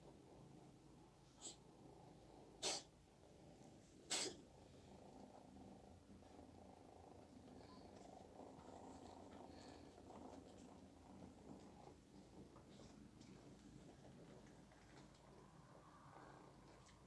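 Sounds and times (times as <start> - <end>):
cat purring: 0.0 - 17.0
cat sneezing: 1.4 - 1.6, 2.6 - 2.9, 4.1 - 4.4.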